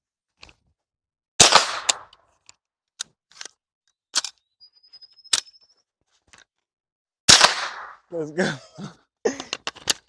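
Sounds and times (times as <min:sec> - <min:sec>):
rifle shot crack: 0:01.4 - 0:02.1, 0:07.3 - 0:08.1
faint high steady tone: 0:04.4 - 0:05.8.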